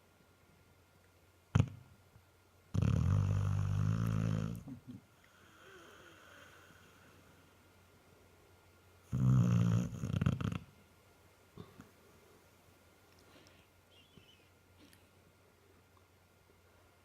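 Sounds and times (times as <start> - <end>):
dog snoring: 2.7 - 7.2, 9.0 - 10.7
dog snorting: 9.1 - 10.7.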